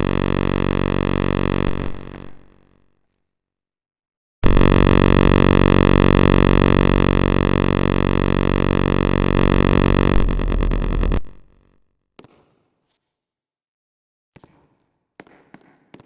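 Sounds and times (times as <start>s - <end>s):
electric siren buzzy tone: 0.0s - 2.6s, 4.4s - 11.5s.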